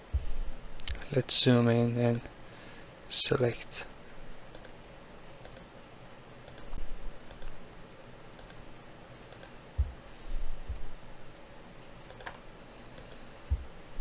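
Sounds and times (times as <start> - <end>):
dull low thumps: 9.8 - 11.0, 13.5 - 13.8.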